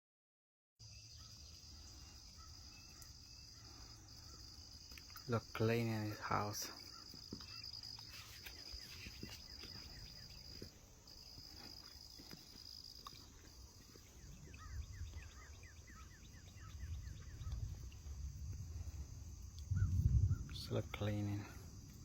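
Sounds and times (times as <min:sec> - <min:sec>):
insect trilling: 0:00.8 - 0:22.0
low rumble: 0:14.2 - 0:22.0.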